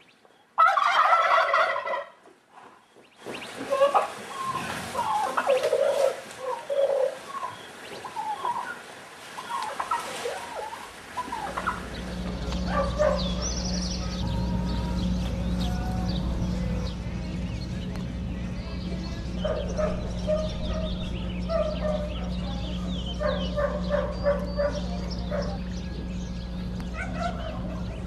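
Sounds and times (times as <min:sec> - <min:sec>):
animal calls: 0:03.4 - 0:17.0, 0:18.6 - 0:28.0
steady low hum: 0:10.8 - 0:28.0.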